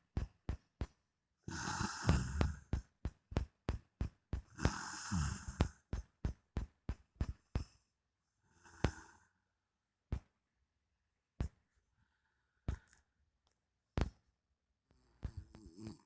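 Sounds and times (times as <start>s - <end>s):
man snoring: 1.5s - 2.7s, 4.6s - 5.8s, 8.6s - 9.2s, 15.2s - 16.0s.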